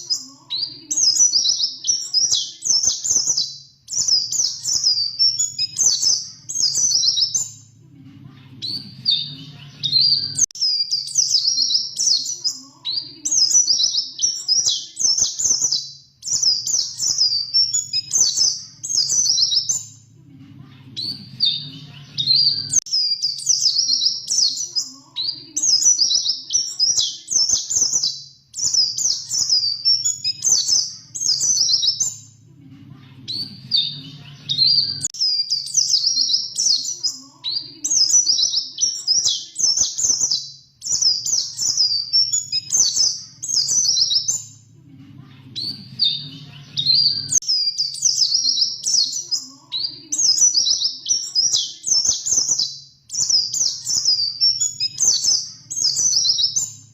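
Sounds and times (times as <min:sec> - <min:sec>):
bird twittering and trilling: 0:00.0 - 0:32.5, 0:33.1 - 0:44.7, 0:45.4 - 0:56.9
faint low hum: 0:06.0 - 0:10.4, 0:18.2 - 0:22.7, 0:30.9 - 0:35.0.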